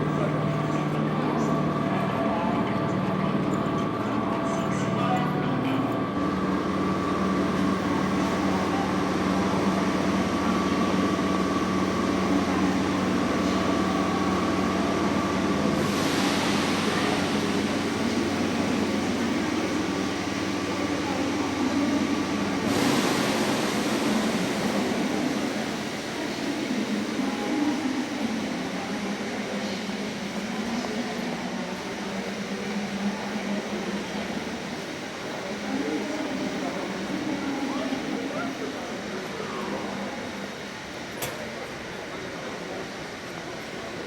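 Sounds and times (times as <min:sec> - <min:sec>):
train rumbling: 0:00.0 - 0:44.0
hiss: 0:15.8 - 0:19.2, 0:22.6 - 0:28.0.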